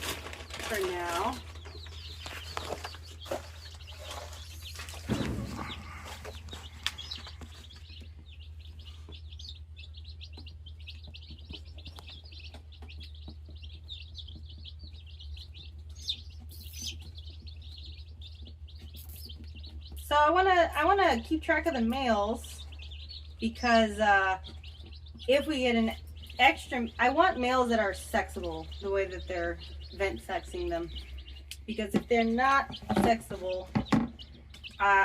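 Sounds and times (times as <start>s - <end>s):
rustling and knocking: 0.0s - 8.2s
chicks peeping: 0.0s - 35.0s
thump: 5.1s - 5.6s.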